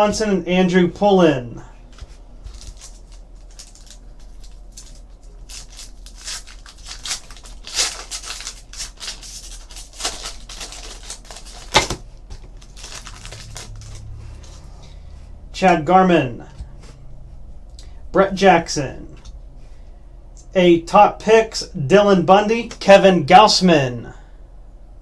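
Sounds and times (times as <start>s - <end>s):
cards rustling and crinkling: 1.9s - 14.7s.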